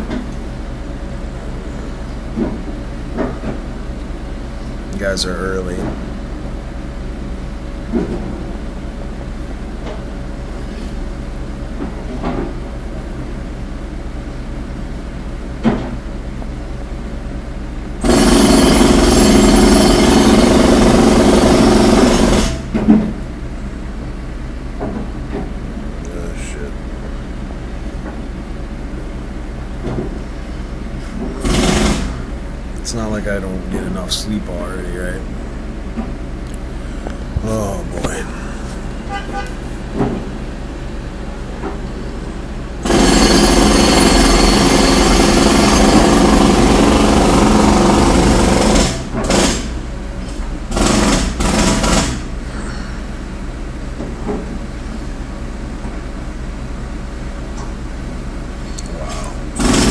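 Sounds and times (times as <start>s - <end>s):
engine idling: 0.0s - 59.9s
jackhammer breaking ground: 18.0s - 22.8s, 31.2s - 32.3s, 42.8s - 49.8s, 50.7s - 52.3s, 59.1s - 59.9s
steady low drone: 32.4s - 42.9s.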